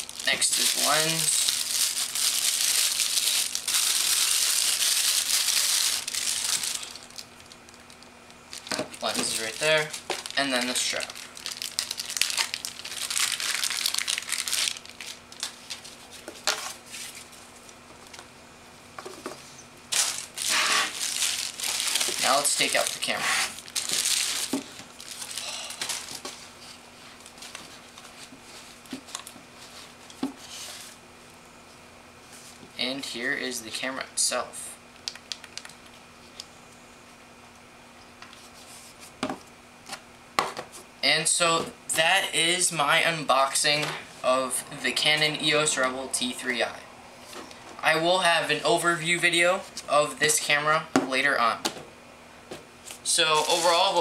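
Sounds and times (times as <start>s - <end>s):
packaging crinkling and rustling: 0.0s - 18.3s, 19.9s - 30.9s, 52.9s - 54.0s.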